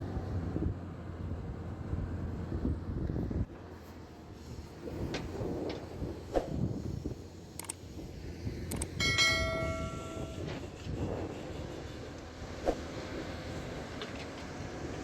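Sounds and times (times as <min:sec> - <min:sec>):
heavy machinery engine rumble: 0:00.0 - 0:15.0
ringing pitched tone: 0:09.0 - 0:10.6.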